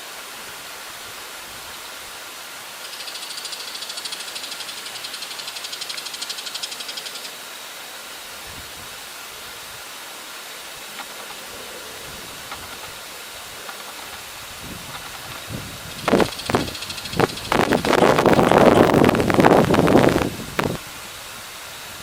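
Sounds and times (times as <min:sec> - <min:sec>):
steady hiss: 0:00.0 - 0:22.0
shrike harsh chattering call: 0:15.9 - 0:19.1.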